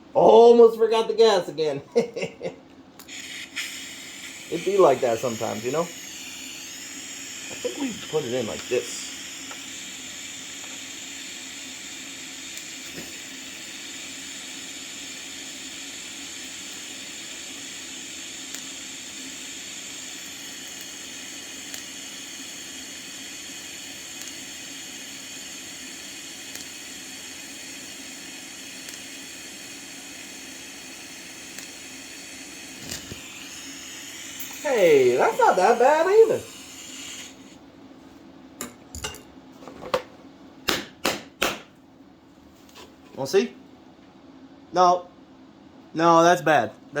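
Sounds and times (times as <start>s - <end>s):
welding arc hissing: 3.0s - 37.6s.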